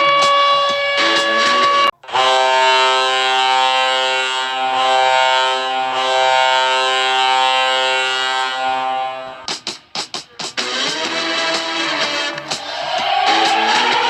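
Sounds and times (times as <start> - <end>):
low goal horn blast: 0.0 - 9.5.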